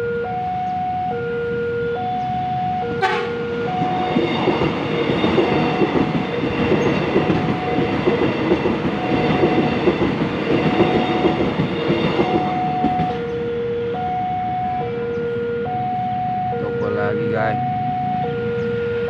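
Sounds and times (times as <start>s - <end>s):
two-tone crossing warning alarm: 0.0s - 19.0s
train wheels clattering on rails: 3.1s - 13.4s.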